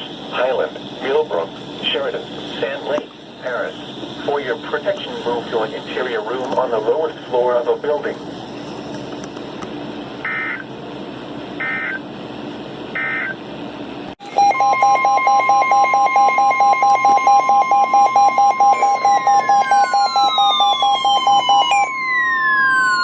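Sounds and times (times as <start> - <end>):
alert tone with pulsing beep: 14.2 - 23.0
digital data bursts: 14.2 - 23.0.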